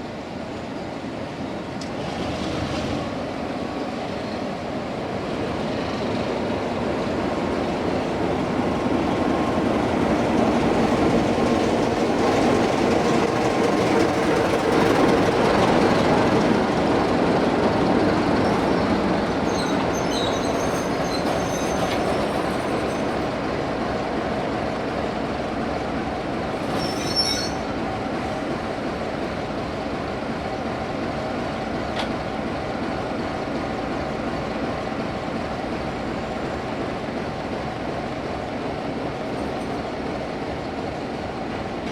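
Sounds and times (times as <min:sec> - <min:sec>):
diesel train rolling past: 0:00.0 - 0:41.9
high wheel squeals: 0:18.4 - 0:23.2, 0:26.6 - 0:27.8.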